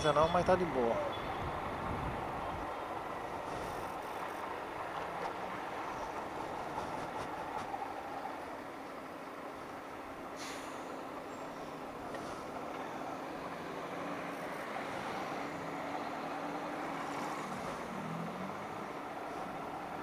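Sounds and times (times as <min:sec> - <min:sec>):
road noise: 0:00.0 - 0:20.0
wind noise: 0:01.2 - 0:05.0.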